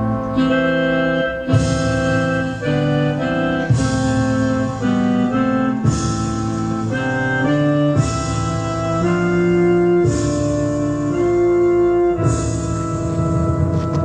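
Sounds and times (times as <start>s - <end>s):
solemn keyboard organ chords: 0.0s - 14.0s.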